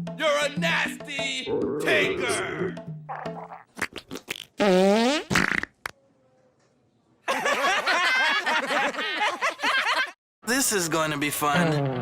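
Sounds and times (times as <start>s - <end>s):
cartoon stomach growl: 1.5s - 4.6s, 11.6s - 12.0s.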